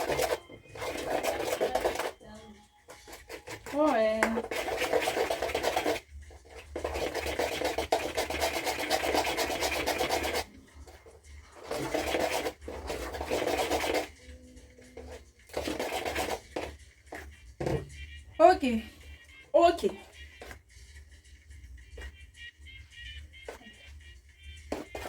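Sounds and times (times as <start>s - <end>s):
utensil scraping a bowl: 0.0s - 2.2s, 2.9s - 17.4s, 24.6s - 25.0s.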